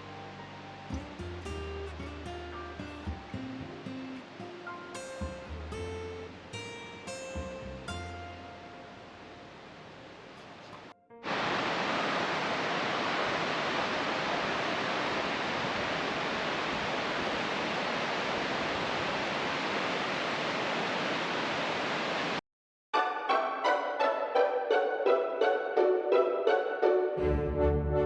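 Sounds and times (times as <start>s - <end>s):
stream water rushing: 0.0s - 22.4s.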